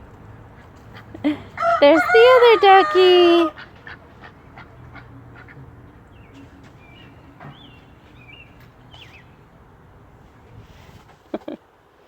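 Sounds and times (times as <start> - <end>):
high bird chirps: 6.1 - 9.4.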